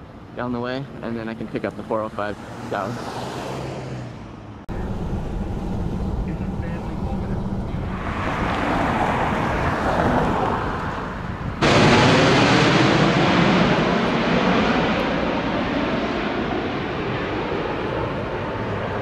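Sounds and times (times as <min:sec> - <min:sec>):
car road and wind noise: 0:00.0 - 0:19.0.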